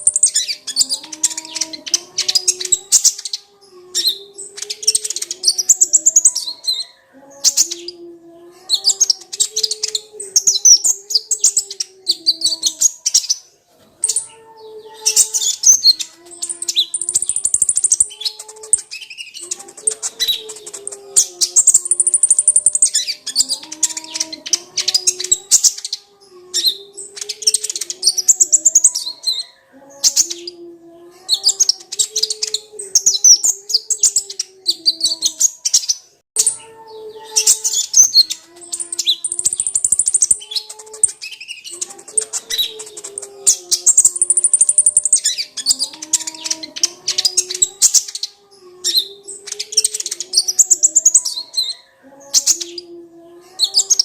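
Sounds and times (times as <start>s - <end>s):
sunbird twittering song: 8.8s - 30.6s, 31.4s - 52.9s.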